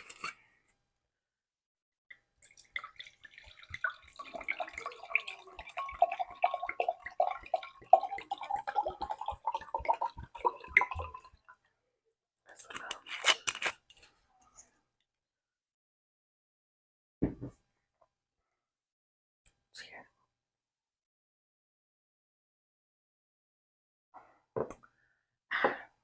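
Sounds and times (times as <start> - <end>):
wine pouring into a glass: 2.4 - 11.4.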